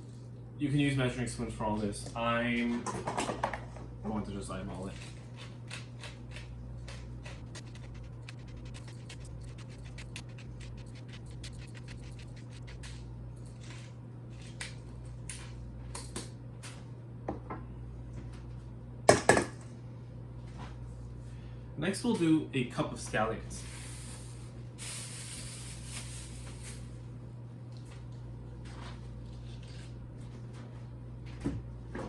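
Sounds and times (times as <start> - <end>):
pepper mill grinding: 5.0 - 14.5.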